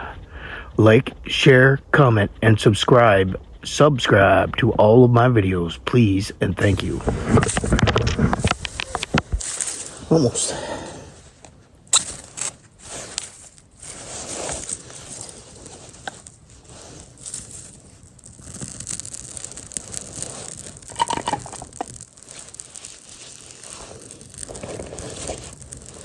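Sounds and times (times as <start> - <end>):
tinder and twigs crackling: 6.6 - 26.0.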